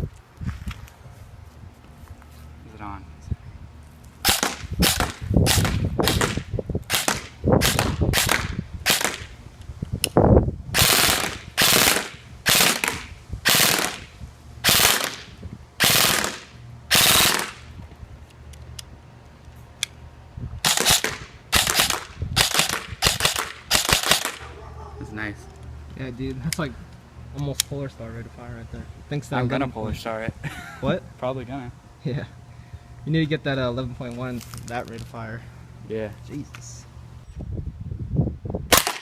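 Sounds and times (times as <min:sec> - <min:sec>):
airsoft rifle full-auto bursts: 0:10.8 - 0:14.1, 0:14.7 - 0:17.6, 0:20.7 - 0:24.4.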